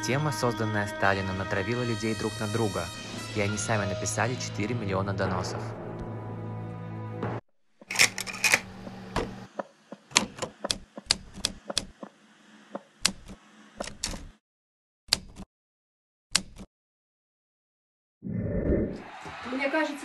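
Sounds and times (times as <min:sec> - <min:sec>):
typewriter keys clacking: 0:07.9 - 0:08.7.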